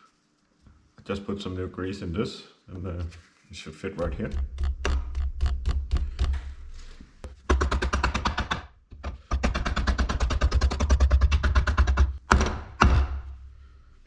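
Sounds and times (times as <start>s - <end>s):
rapid mechanical clicking: 4.0s - 6.6s, 7.2s - 12.2s.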